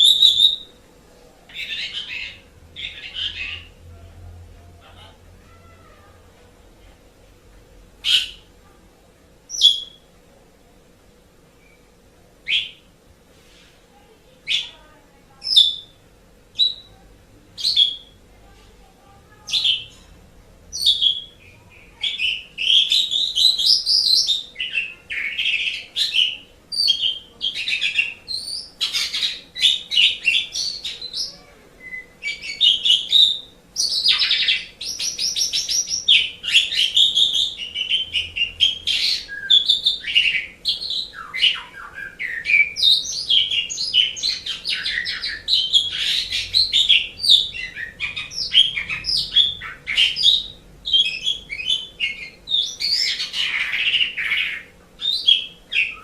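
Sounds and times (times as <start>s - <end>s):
starling singing: 0.0s - 0.8s, 1.5s - 3.9s, 8.0s - 8.6s, 9.5s - 10.1s, 12.4s - 12.9s, 14.4s - 17.0s, 17.6s - 18.3s, 19.3s - 20.1s, 20.7s - 56.0s.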